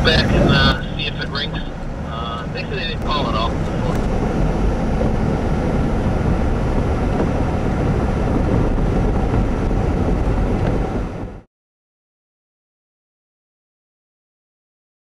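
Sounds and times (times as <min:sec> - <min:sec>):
expressway traffic roar: 0:00.0 - 0:11.4.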